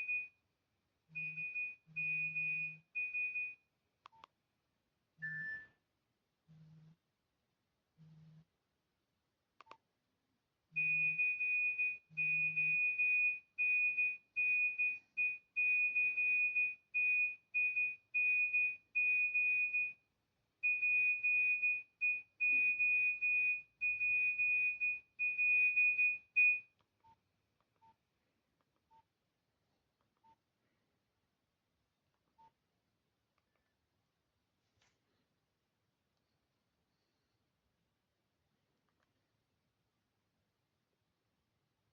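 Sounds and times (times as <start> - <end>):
phone ringtone beeping: 10.8 - 20.0.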